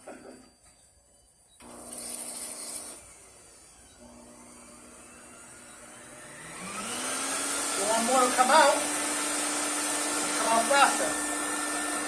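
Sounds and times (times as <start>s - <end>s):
vacuum cleaner motor running: 1.6s - 12.0s.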